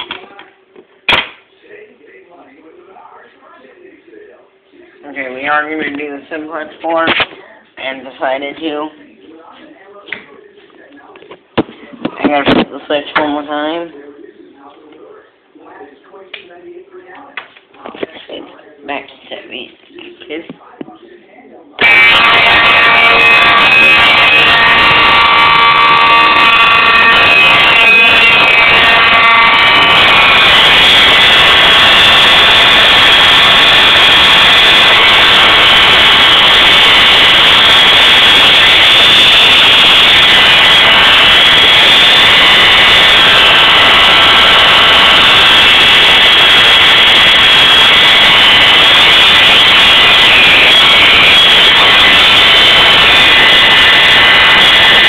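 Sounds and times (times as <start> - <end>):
buzzy fire alarm horn: 21.8 - 55.0.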